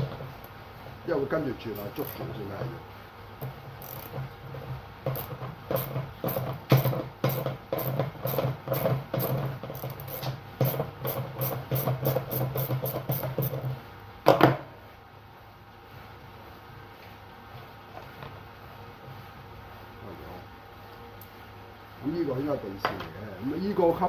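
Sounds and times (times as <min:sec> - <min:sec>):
ratchet wrench clicking: 0:01.8 - 0:02.3, 0:03.4 - 0:04.2, 0:05.1 - 0:13.6.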